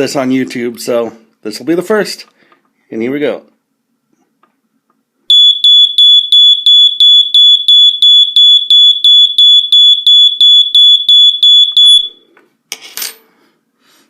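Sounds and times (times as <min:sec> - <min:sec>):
pulsing smoke alarm: 0:05.3 - 0:12.3.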